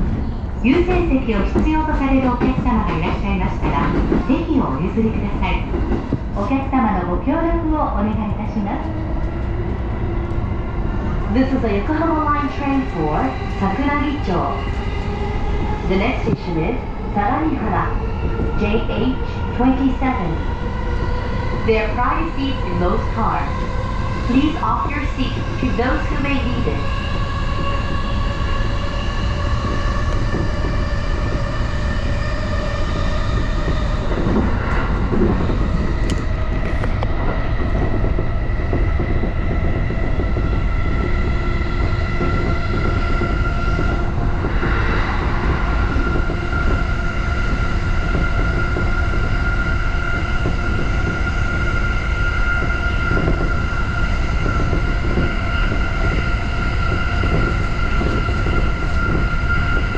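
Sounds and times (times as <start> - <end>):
train wheels rumbling on rails: 0.0 - 59.9.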